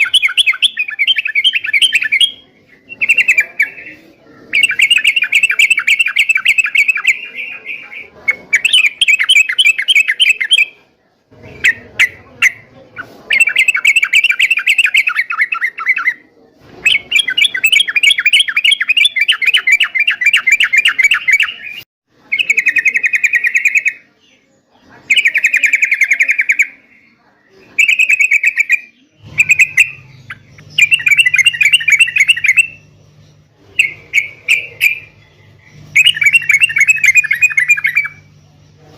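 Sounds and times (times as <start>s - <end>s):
bulbul chattering song: 0.0s - 38.9s
faint low hum: 29.0s - 38.9s.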